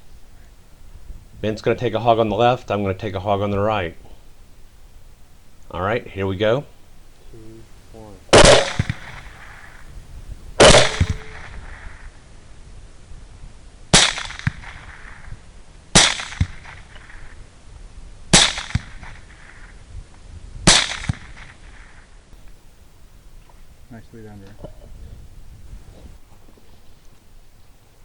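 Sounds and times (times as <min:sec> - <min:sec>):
rifle shots: 0:08.3 - 0:09.7, 0:10.6 - 0:11.6.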